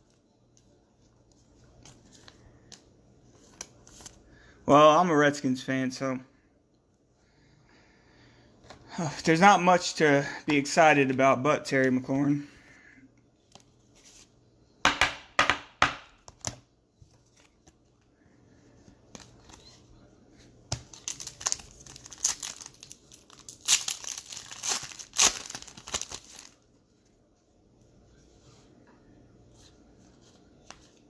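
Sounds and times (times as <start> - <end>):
card pack wrappers tearing: 20.7 - 26.6
wrapper crinkling: 20.8 - 26.7.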